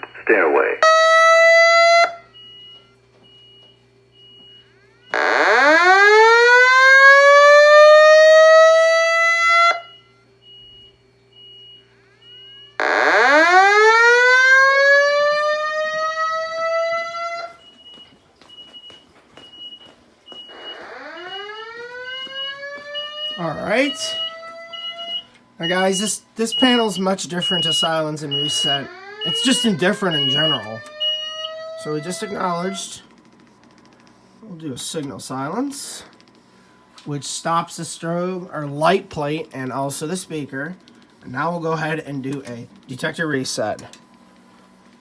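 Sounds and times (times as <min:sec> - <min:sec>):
rising evacuation tone: 0:12.2 - 0:18.0, 0:20.3 - 0:33.2.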